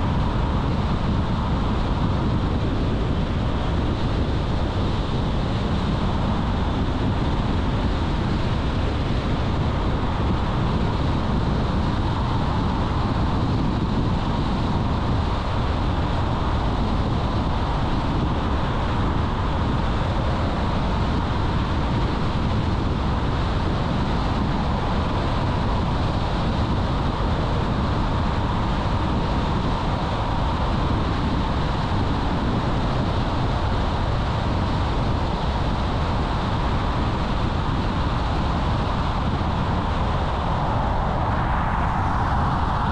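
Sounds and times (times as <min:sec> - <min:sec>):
road and tyre noise: 0:00.0 - 0:42.9
car engine hum: 0:38.2 - 0:42.9.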